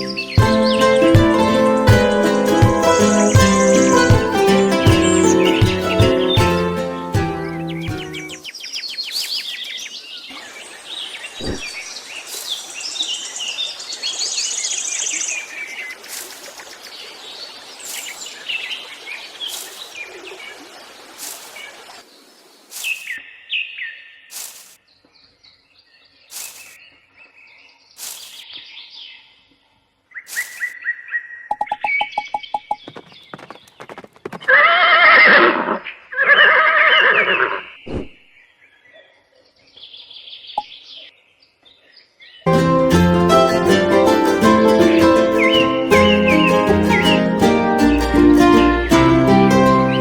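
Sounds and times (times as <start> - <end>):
birds chirping and singing: 0.0 - 16.5, 44.1 - 48.7.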